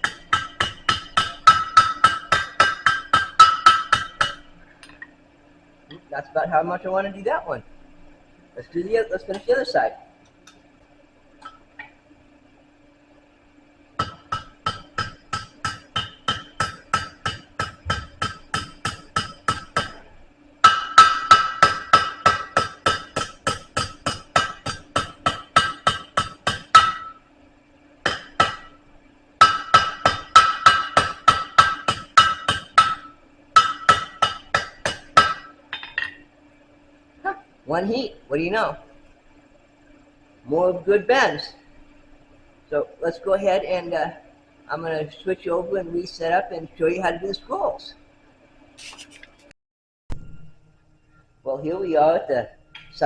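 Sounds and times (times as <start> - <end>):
hammer striking steel on anvil: 0.0 - 4.4, 14.0 - 27.2, 28.0 - 28.7, 29.4 - 36.2
faint steady hum: 0.0 - 49.5, 50.1 - 53.0.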